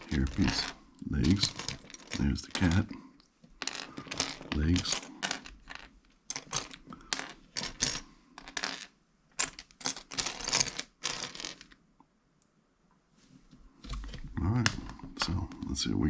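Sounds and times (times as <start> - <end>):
plastic pieces clicking and clattering: 0.0 - 2.9, 3.6 - 11.8.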